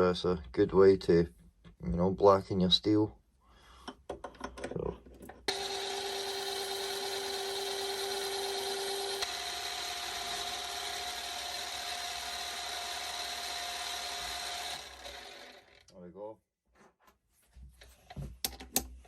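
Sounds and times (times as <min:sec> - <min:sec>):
power tool motor whine: 0:05.5 - 0:15.8.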